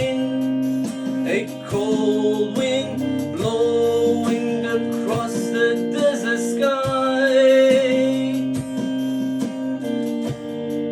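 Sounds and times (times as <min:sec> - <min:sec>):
acoustic guitar strumming: 0:00.0 - 0:10.9
person singing long notes: 0:01.3 - 0:08.6.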